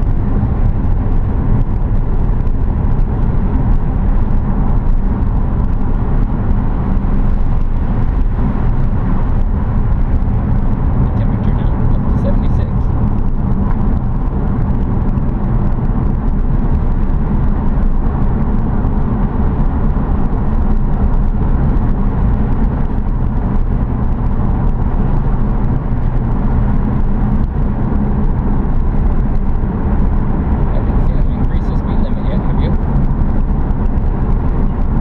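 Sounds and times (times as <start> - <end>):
car engine and road noise: 0.0 - 35.0.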